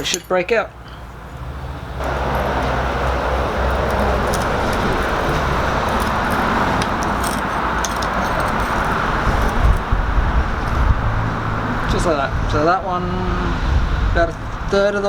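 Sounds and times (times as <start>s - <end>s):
metallic clicks: 2.0s - 9.9s
metal knocks: 2.0s - 11.9s
shop equipment rushing noise: 2.0s - 12.5s.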